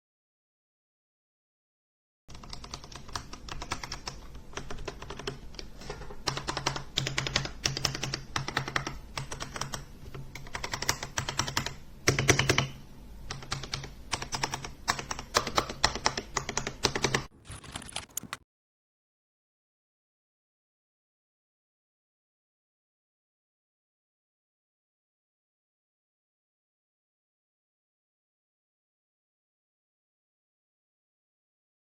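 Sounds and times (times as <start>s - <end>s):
mechanical keyboard typing: 2.3s - 12.7s, 13.3s - 18.4s.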